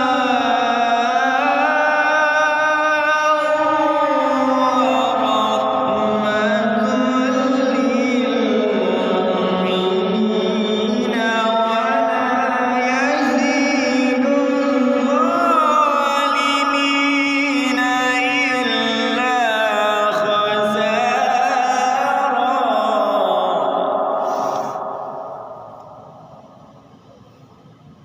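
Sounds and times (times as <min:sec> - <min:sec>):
man chanting recitation: 0:00.0 - 0:25.5.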